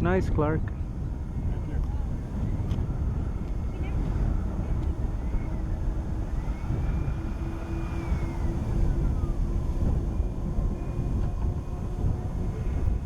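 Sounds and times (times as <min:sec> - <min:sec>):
model jet fans whining: 0:00.0 - 0:13.0
steady low rumble: 0:00.0 - 0:13.0.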